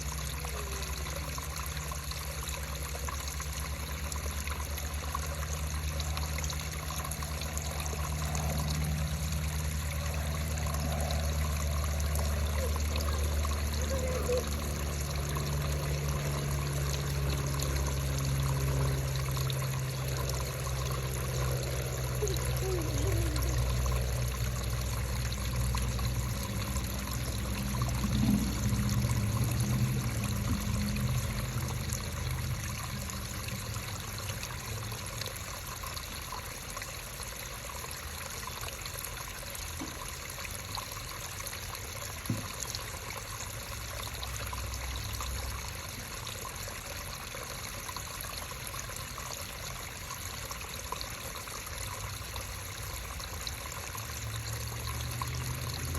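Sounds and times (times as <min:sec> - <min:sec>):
creek water babbling: 0:00.0 - 0:55.9.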